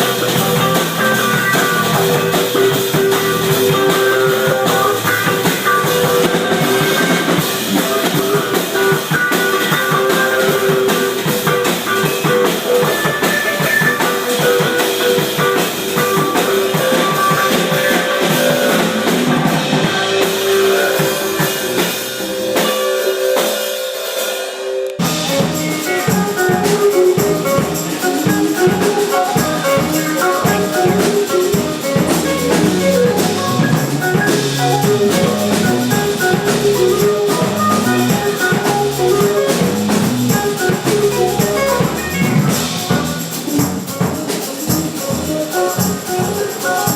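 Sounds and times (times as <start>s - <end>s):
electric guitar: 0.0s - 46.9s
live band playing: 0.0s - 46.9s.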